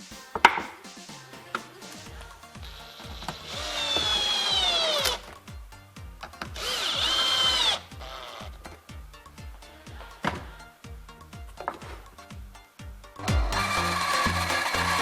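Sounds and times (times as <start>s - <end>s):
background music with beat: 0.0s - 15.0s
power drill boring into wood: 3.4s - 5.2s, 6.6s - 8.5s, 13.6s - 15.0s.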